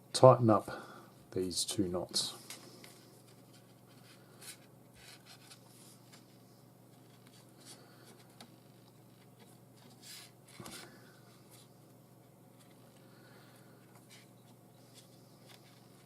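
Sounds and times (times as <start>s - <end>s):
paracord rustling and rubbing: 2.5s - 13.0s, 13.8s - 16.0s.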